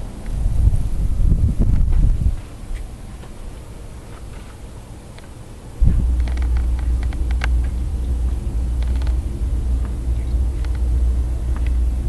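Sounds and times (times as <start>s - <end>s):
wind buffeting microphone: 0.0s - 3.0s, 5.7s - 12.0s.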